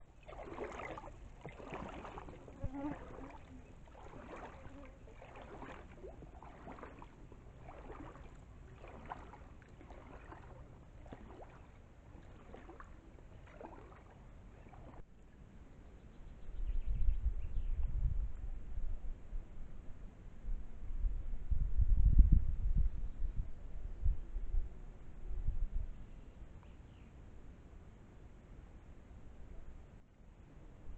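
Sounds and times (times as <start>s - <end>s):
river water lapping: 0.0s - 15.1s.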